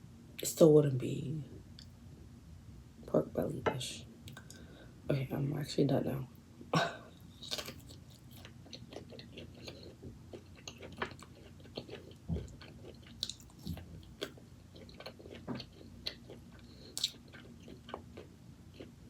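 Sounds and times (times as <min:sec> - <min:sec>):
chewing mouth clicks: 0:07.4 - 0:18.9.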